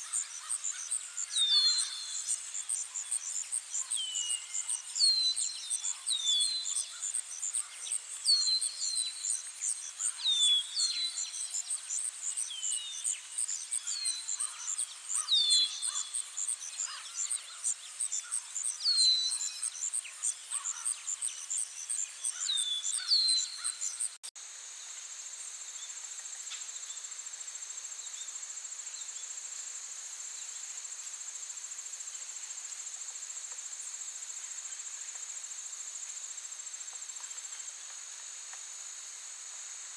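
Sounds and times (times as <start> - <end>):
high insect trill: 0.0 - 24.2
insects chirping in pulses: 0.0 - 24.2.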